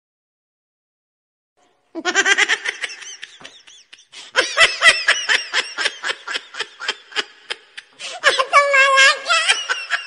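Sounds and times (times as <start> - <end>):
high-pitched laughter: 2.0 - 10.0.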